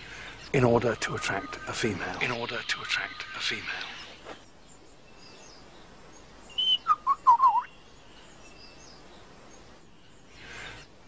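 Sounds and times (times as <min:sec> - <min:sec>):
bird whistling song: 0:06.5 - 0:09.0.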